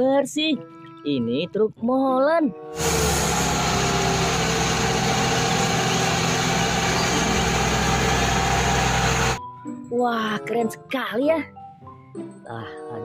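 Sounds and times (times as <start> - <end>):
truck engine idling: 2.8 - 9.4.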